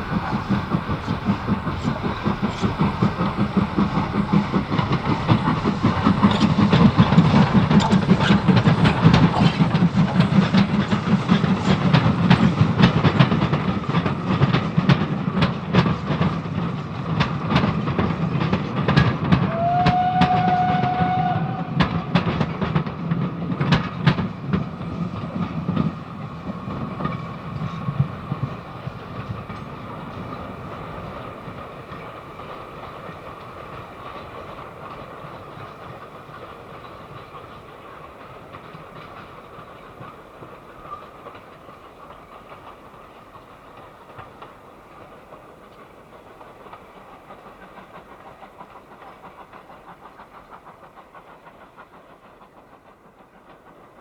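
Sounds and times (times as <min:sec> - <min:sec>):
steam train wheels clicking: 0:00.0 - 0:54.0
steam train whistle: 0:19.3 - 0:22.5.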